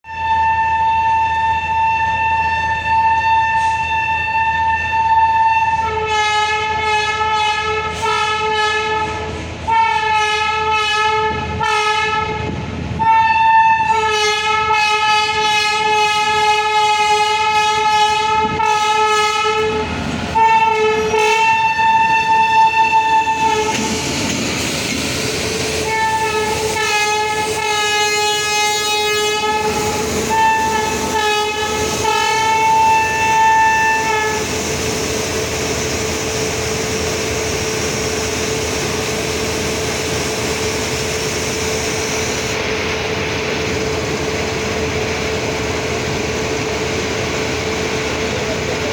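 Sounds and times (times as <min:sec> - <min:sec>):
locomotive horn blasts: 0:00.1 - 0:23.8, 0:25.8 - 0:34.5
rushing noise: 0:21.0 - 0:48.9.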